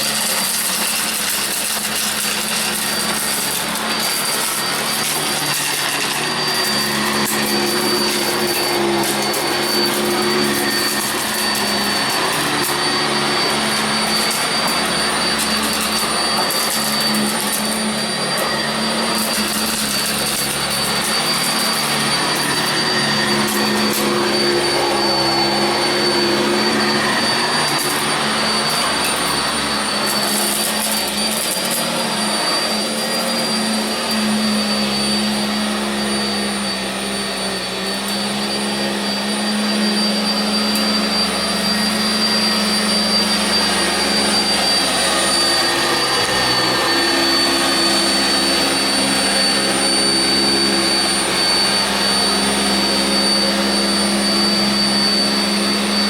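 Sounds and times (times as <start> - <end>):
upright vacuum cleaner on carpet: 0.0 - 56.0.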